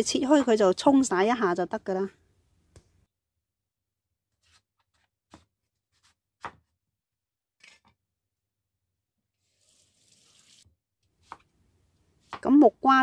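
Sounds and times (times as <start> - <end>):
running tap water: 9.4 - 10.7.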